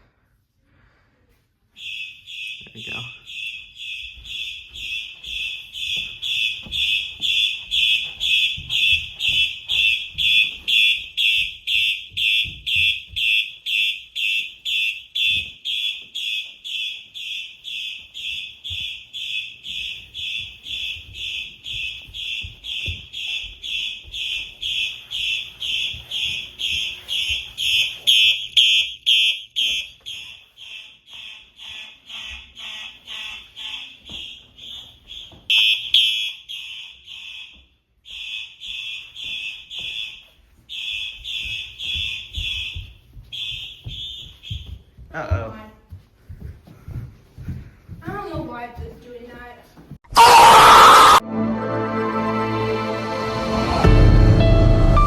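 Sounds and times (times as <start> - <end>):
fire alarm horn pulses: 1.8 - 34.4, 35.1 - 37.5.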